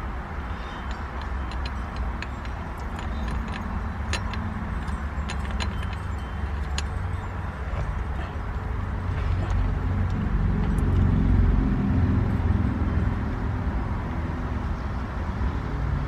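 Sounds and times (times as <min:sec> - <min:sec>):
small metal parts clinking: 0:00.4 - 0:11.0.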